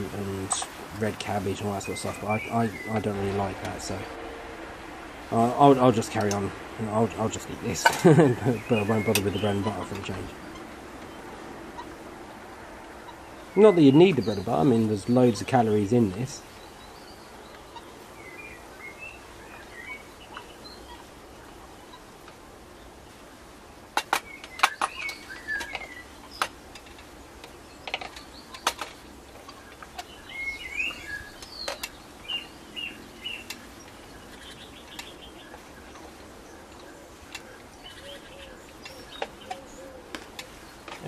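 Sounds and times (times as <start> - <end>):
small birds chirping: 0.0 - 41.0
sharp clicks and knocks: 23.9 - 30.2.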